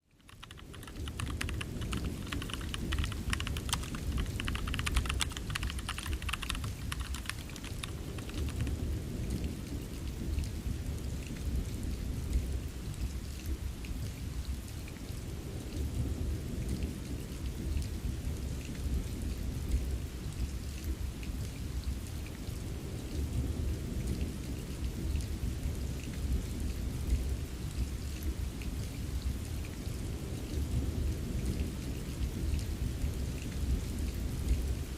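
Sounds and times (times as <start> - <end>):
steady rain: 0.0 - 34.9
keyboard typing clicks: 0.1 - 8.7.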